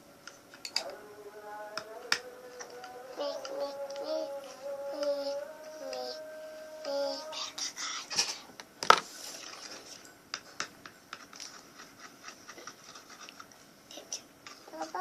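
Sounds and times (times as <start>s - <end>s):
slime being stirred and scraped: 11.1s - 13.6s.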